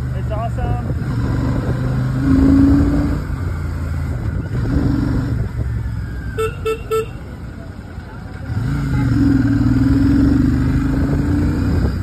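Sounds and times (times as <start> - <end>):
motorcycle engine running: 1.6 - 12.0
vehicle horn tooting: 6.3 - 7.3.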